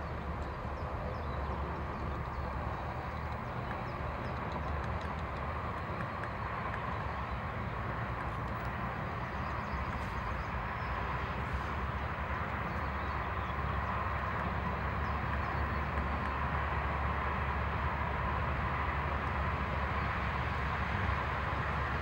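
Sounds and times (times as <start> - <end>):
distant traffic rumble: 0.0 - 22.0
faint high ticks: 3.2 - 7.1.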